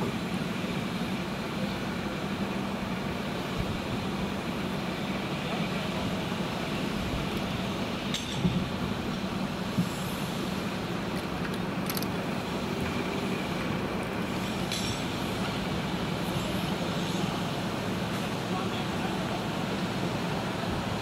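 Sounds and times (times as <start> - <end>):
heavy vehicle engine running: 0.0 - 21.0.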